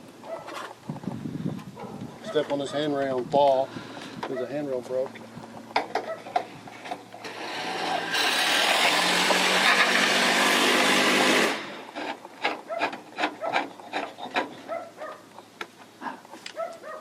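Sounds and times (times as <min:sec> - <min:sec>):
power drill driving screw: 0:07.2 - 0:14.5.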